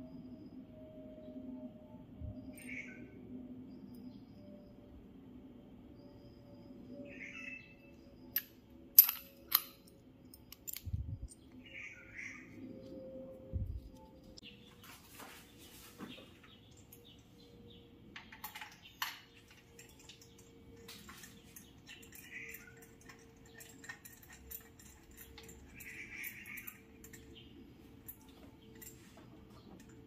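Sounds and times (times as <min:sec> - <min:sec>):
tools clicking and tapping: 0:08.3 - 0:11.6, 0:18.2 - 0:30.0.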